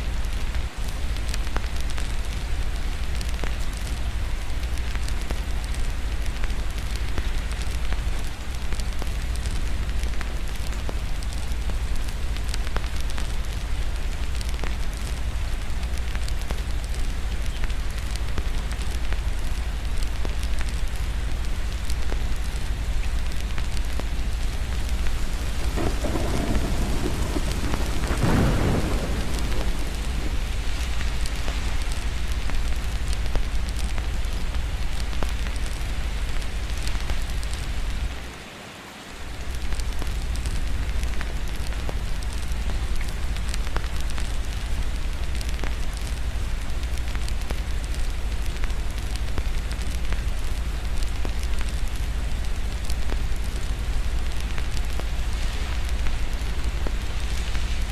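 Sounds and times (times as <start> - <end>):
steady rain: 0.0 - 57.9
low rumble: 23.0 - 35.8
thunder roll: 25.0 - 32.2.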